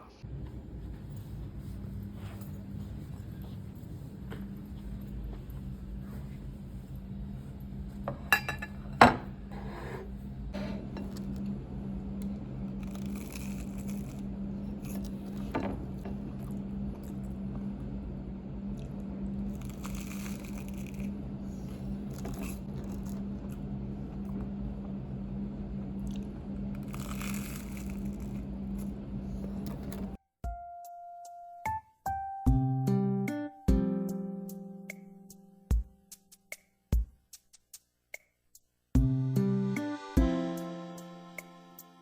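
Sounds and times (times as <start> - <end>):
low electrical hum: 0.0 - 30.2
dishes and cutlery clinking: 8.1 - 9.4.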